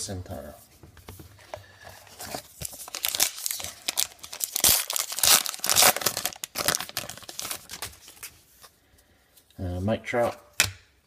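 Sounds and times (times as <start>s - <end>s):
plastic wrapper crinkling: 2.1s - 8.3s.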